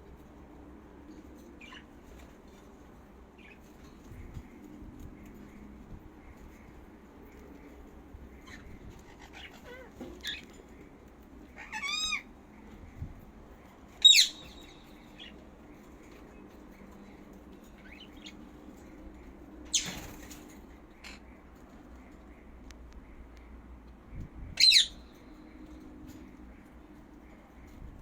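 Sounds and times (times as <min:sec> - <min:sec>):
parrot high squawk: 0:11.6 - 0:12.3
parrot wavering call: 0:11.6 - 0:12.3
parrots chirping: 0:11.6 - 0:12.3, 0:14.0 - 0:15.4, 0:24.6 - 0:25.2.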